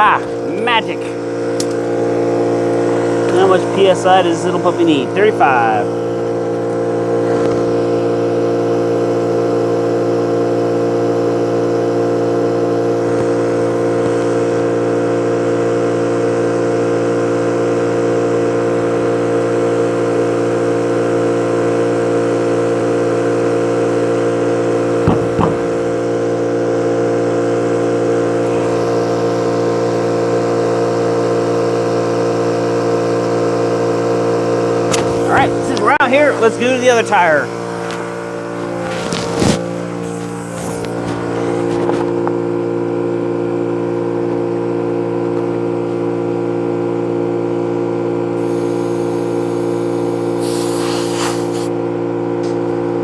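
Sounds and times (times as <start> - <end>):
air compressor humming: 0.0 - 16.7, 24.4 - 43.1, 48.2 - 51.8.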